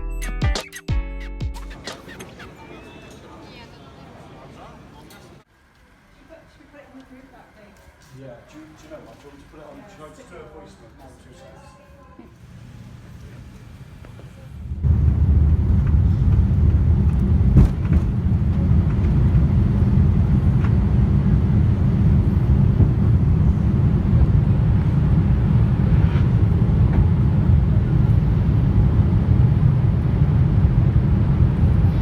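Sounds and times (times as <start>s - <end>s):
vehicle interior noise: 12.3s - 32.0s.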